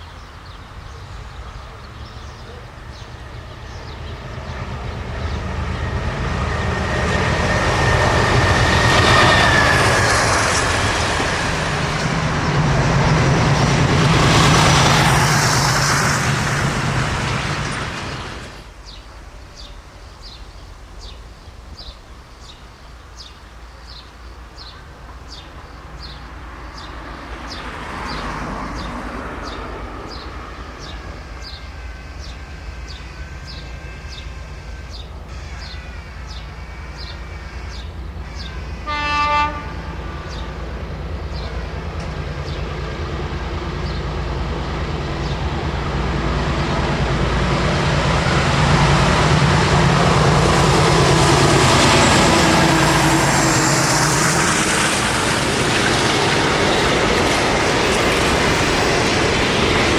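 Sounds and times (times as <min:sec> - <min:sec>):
train engine rumble: 0:00.0 - 0:59.9
train horn blast: 0:30.8 - 0:40.6.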